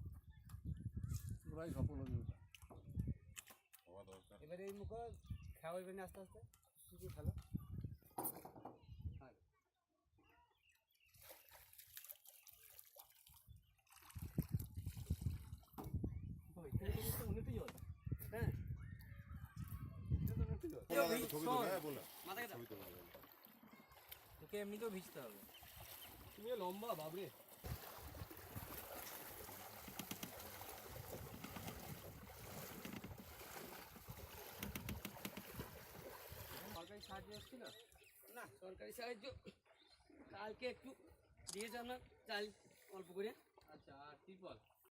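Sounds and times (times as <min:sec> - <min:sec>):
water sloshing and trickling: 0:10.8 - 0:18.3, 0:18.9 - 0:38.6.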